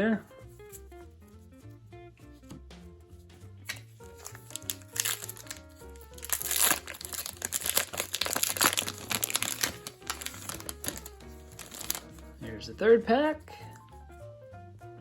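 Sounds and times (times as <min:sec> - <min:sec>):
soft background music: 0:00.0 - 0:15.0
wax paper wrapper crinkling: 0:03.7 - 0:12.4.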